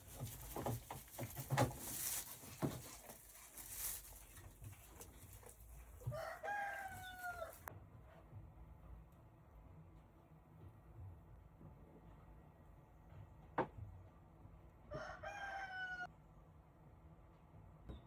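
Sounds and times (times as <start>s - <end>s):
faint rustling with light knocks: 0.0s - 8.4s
rooster crowing: 6.0s - 7.7s, 14.9s - 16.1s.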